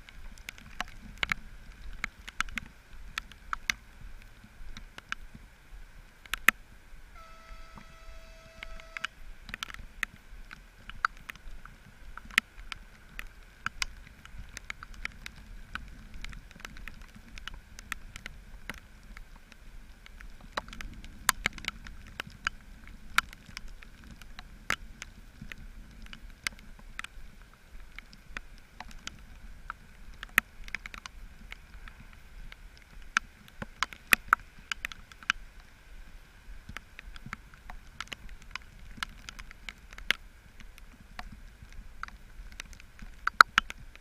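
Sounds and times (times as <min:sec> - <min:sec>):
locomotive horn: 0:07.2 - 0:09.1.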